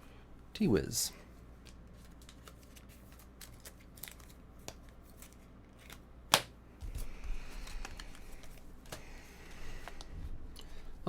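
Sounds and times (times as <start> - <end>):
trading cards clicking and sliding: 1.6 - 10.1.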